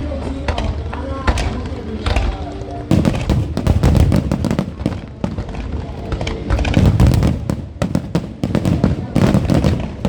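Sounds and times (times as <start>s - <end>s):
fireworks barrage: 0.5s - 10.0s
deep booms: 1.3s - 5.6s, 6.5s - 10.0s.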